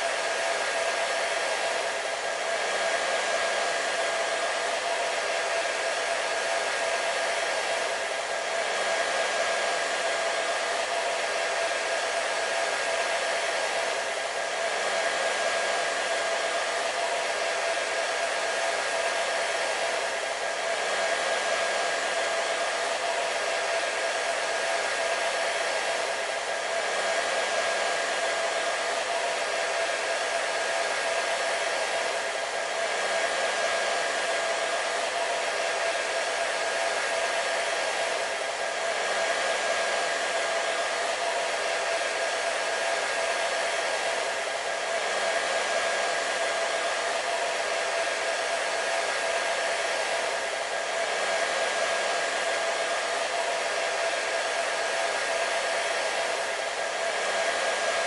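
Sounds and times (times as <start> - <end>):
hair dryer running: 0.0 - 58.0.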